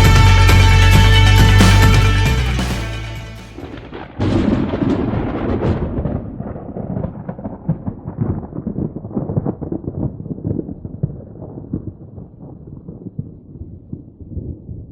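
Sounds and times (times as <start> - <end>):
soundtrack music: 0.0 - 4.0
thunderclap and rumble: 3.6 - 14.9.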